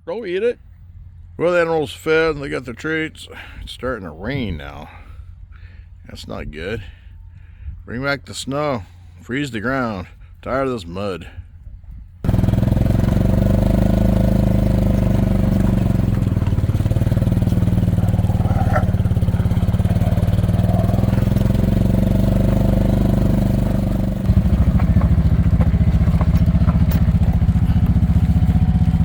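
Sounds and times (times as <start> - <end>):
small engine running: 12.2 - 29.0.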